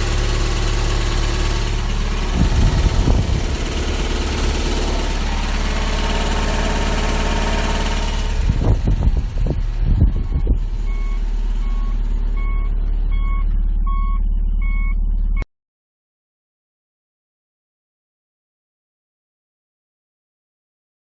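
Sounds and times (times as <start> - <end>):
car engine idling: 0.0 - 15.4
parking sensor beeping: 9.9 - 15.5.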